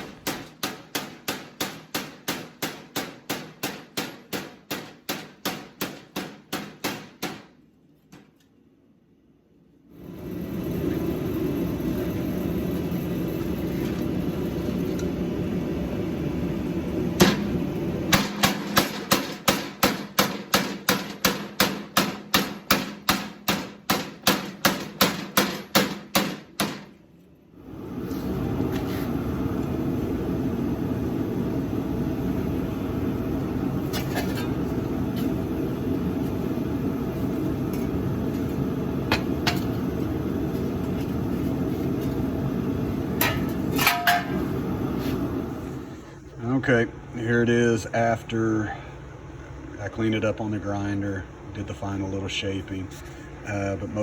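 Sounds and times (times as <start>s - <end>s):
power hammer striking steel: 0.0s - 7.6s, 18.1s - 26.9s, 43.2s - 44.4s
shop equipment running: 9.9s - 27.0s, 27.6s - 46.7s.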